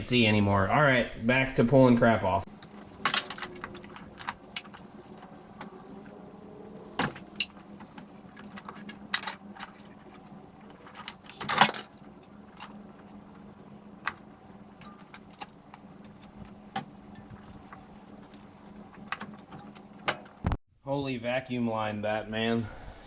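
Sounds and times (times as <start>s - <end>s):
faint steady hum: 2.5s - 20.6s
parts clattering: 2.5s - 20.6s
small engine parts rattling: 2.5s - 20.6s.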